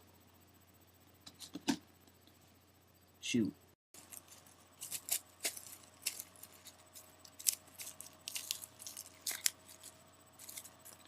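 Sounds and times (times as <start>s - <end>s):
bubble wrap crinkling and clicking: 4.0s - 11.0s.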